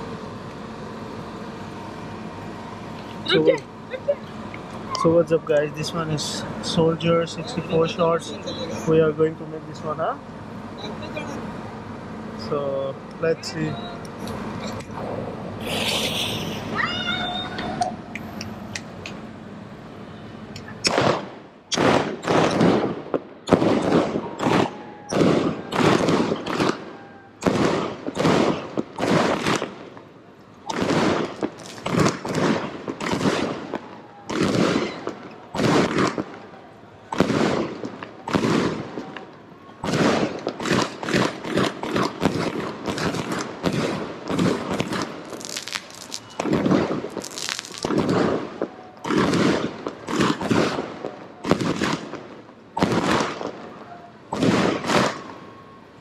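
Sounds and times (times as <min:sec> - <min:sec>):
firework cake firing bangs: 0:20.8 - 0:55.5.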